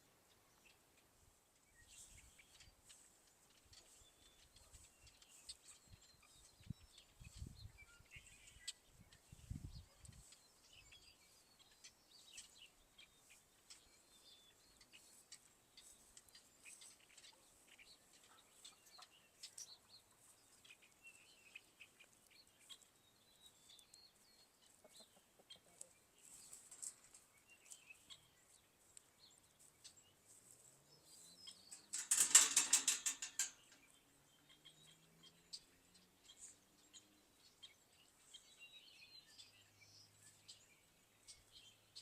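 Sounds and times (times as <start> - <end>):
faint bird chirps: 0.2 - 32.1.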